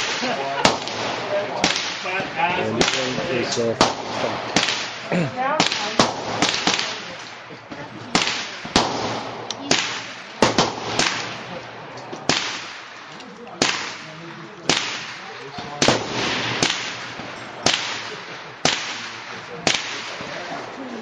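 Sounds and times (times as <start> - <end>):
rifle shots echoing: 0.0 - 20.8.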